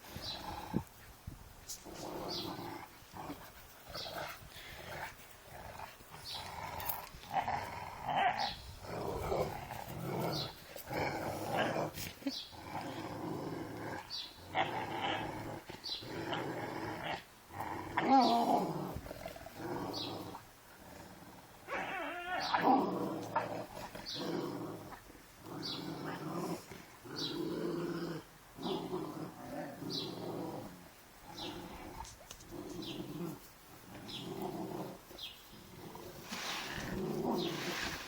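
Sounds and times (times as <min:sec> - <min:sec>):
dogs play-growling: 0:00.0 - 0:38.0
dog yelping growl: 0:21.6 - 0:26.6.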